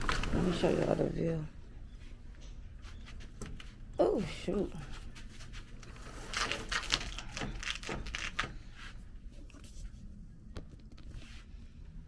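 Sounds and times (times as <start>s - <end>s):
rustling and knocking scrapes: 5.0s - 9.0s.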